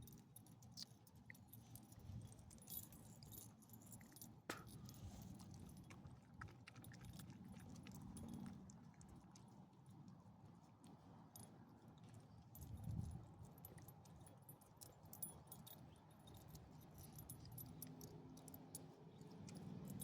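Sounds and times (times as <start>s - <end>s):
light jingling and clicks: 0.0s - 20.0s.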